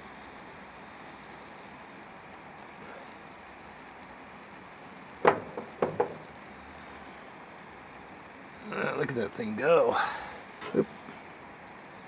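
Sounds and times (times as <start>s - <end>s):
small knock: 5.2s - 6.3s.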